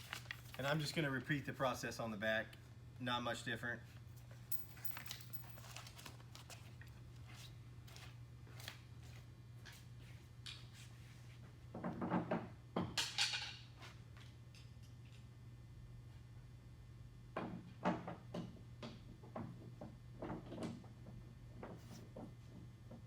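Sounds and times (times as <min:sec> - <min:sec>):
hardware clicks and rustles: 0:04.5 - 0:06.1.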